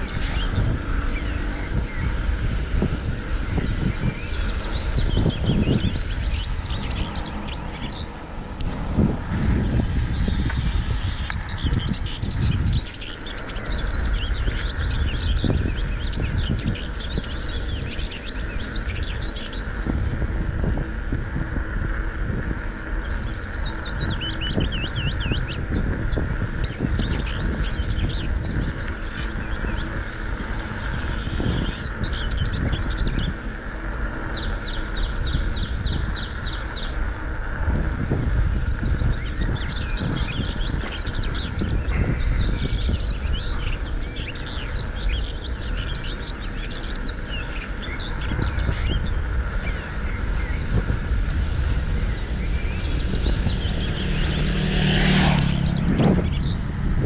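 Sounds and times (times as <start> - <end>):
bird repeated chirps: 0.0 - 2.8
bicycle tyres rolling: 0.0 - 57.0
small birds chirping: 0.0 - 57.0.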